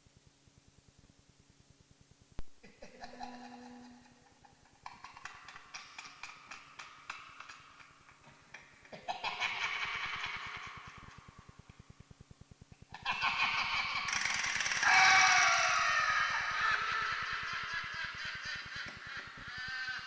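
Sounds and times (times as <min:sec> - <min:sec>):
spooky voice laughing: 0:02.6 - 0:11.4, 0:12.9 - 0:20.0.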